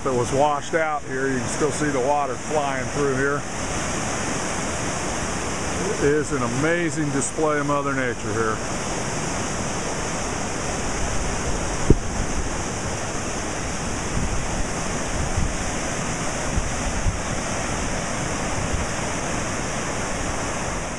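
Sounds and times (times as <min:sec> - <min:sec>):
floodwater rushing: 0:00.0 - 0:20.9
wind buffeting microphone: 0:09.0 - 0:20.9
sharp low bump: 0:11.8 - 0:12.1.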